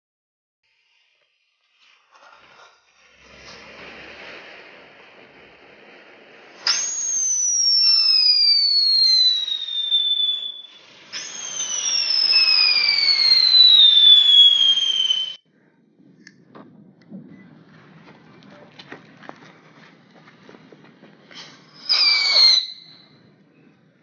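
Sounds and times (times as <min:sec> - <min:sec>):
hiss: 0:00.7 - 0:14.9, 0:21.3 - 0:23.1
whistling fireworks: 0:01.6 - 0:24.0.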